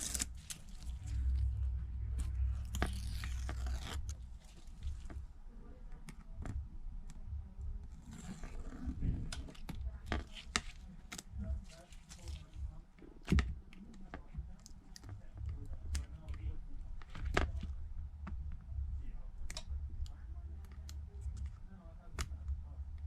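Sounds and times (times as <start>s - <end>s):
film peeling rustle: 0.0s - 1.5s, 2.2s - 5.3s, 8.0s - 17.7s.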